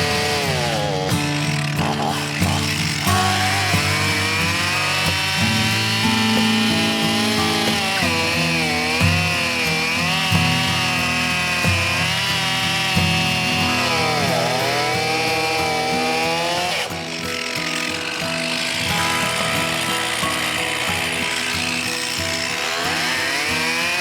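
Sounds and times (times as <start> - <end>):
chainsaw cutting wood: 0.0 - 24.0.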